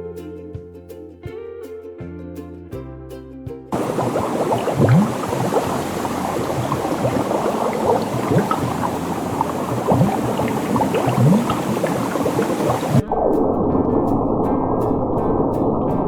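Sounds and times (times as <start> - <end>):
water bubbling and gurgling: 3.8 - 13.0.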